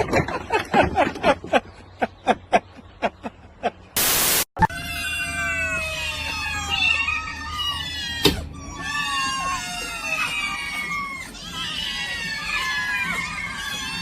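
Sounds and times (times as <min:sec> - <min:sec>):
loud static hiss: 0:04.0 - 0:04.5
cat meowing: 0:04.7 - 0:14.0.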